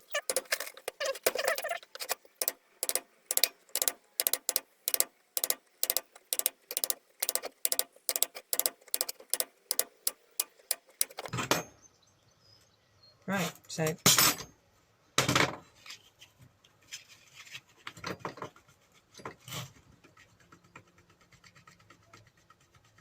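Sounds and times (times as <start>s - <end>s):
rapid metallic taps on nut: 0.2s - 11.3s.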